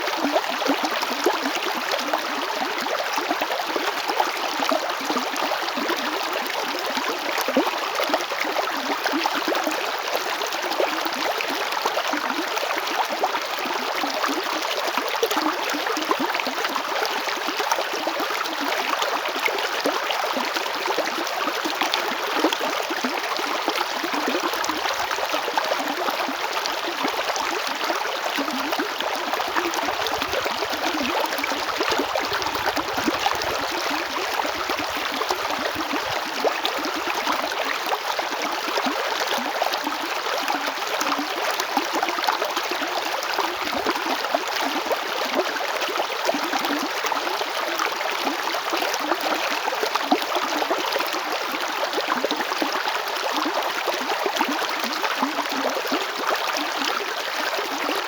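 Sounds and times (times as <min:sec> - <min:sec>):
river rushing over rocks: 0:29.3 - 0:36.8.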